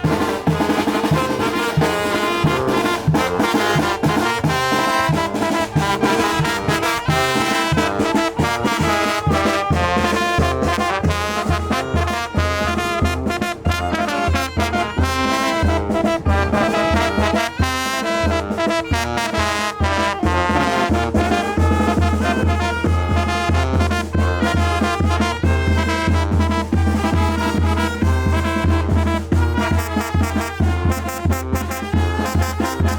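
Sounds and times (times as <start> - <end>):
brass band playing: 0.0 - 32.9
trumpets and trombones: 0.0 - 32.9.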